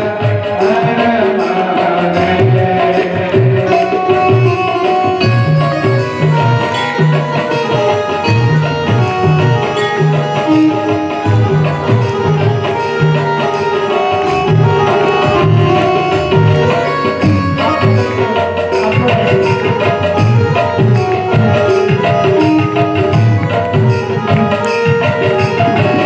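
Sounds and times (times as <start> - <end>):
held melodic notes: 0.0 - 26.0
hand drum booming strokes: 11.4 - 26.0.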